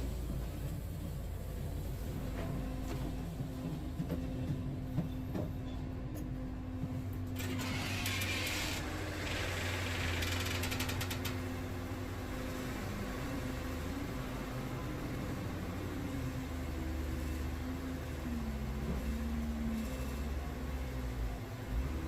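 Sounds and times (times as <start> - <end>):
sawmill humming: 7.2 - 22.0.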